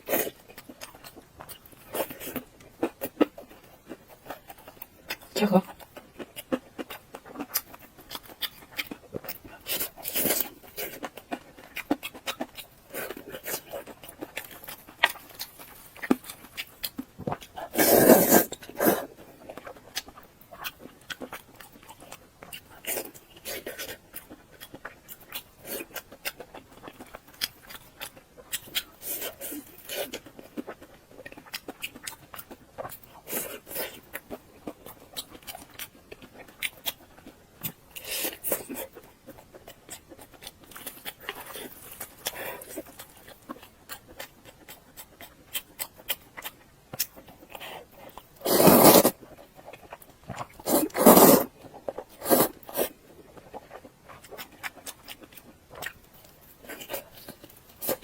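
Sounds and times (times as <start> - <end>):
chewing and wet mouth clicks: 18.5 - 58.0.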